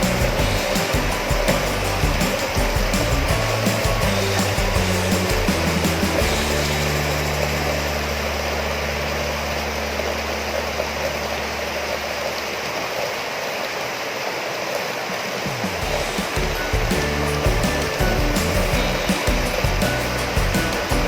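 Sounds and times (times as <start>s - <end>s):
steady rain falling: 0.0s - 21.0s
soft background music: 15.8s - 21.0s.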